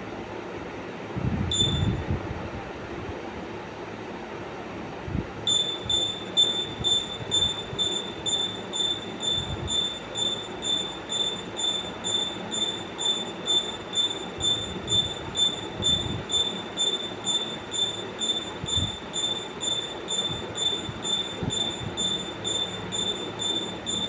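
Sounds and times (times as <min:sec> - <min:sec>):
high-pitched pulsing beep: 0:01.5 - 0:02.0, 0:05.5 - 0:24.0
steady background rumble: 0:05.5 - 0:24.0.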